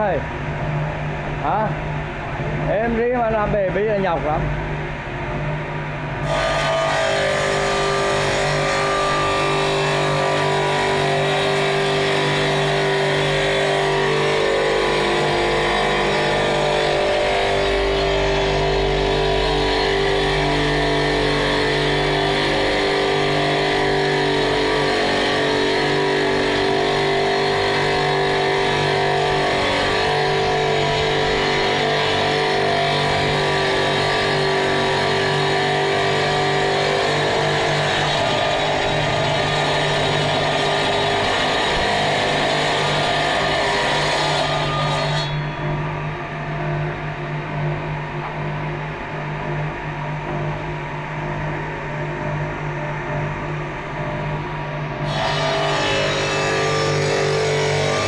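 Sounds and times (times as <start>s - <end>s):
stone-cutting saw running: 6.2s - 46.6s, 55.0s - 58.0s.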